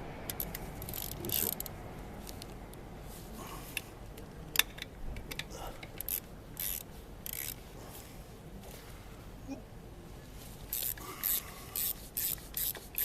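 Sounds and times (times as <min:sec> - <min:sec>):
tool clicking on metal: 0:10.7 - 0:13.0.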